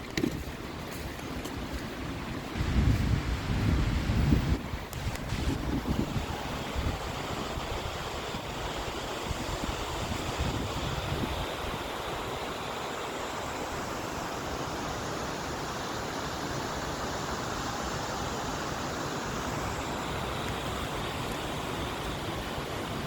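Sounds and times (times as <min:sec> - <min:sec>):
waterfall rushing: 0:05.0 - 0:23.0.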